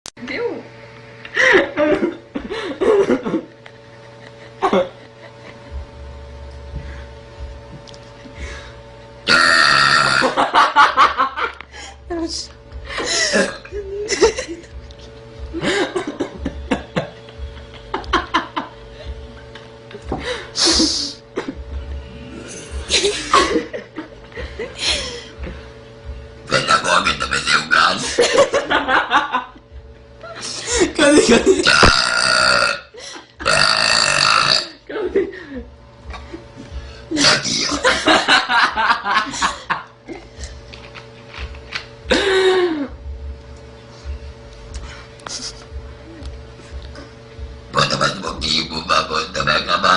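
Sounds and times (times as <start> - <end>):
person laughing: 1.3 - 5.8, 9.9 - 14.8, 15.5 - 19.2, 19.9 - 21.6, 22.4 - 25.4, 27.9 - 29.6, 30.2 - 32.0, 34.8 - 40.6, 42.0 - 43.0
voices and chuckling: 1.3 - 5.8
girl belching: 9.3 - 10.4, 13.4 - 13.7, 31.6 - 34.8, 37.1 - 37.8, 47.8 - 49.9.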